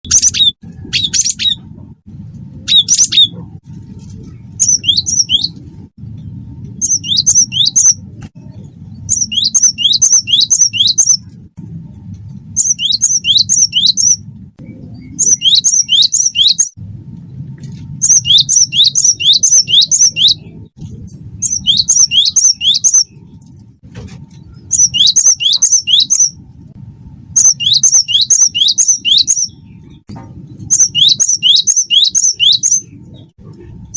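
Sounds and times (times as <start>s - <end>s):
bird singing whistled notes: 0.0s - 1.6s, 4.6s - 5.6s, 6.8s - 8.0s, 9.0s - 11.3s, 12.6s - 16.8s, 18.0s - 20.6s, 21.4s - 23.2s, 24.6s - 26.4s, 27.4s - 30.0s, 30.7s - 33.3s
steady low hum: 0.0s - 33.9s.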